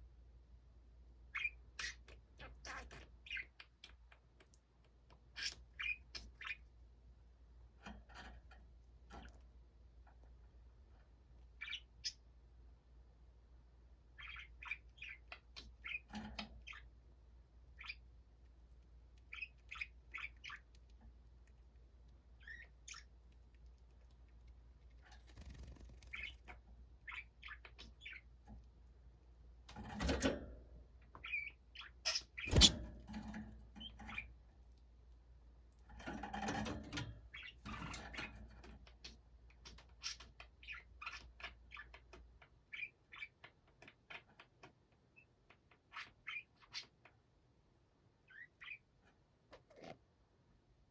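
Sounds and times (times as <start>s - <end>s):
budgerigars chirping: 1.3s - 4.0s, 5.3s - 6.6s, 11.6s - 12.2s, 14.2s - 16.9s, 17.7s - 18.1s, 19.3s - 20.9s, 22.4s - 23.3s, 25.2s - 28.4s, 31.2s - 32.8s, 37.3s - 38.0s, 38.9s - 44.6s, 48.3s - 48.9s.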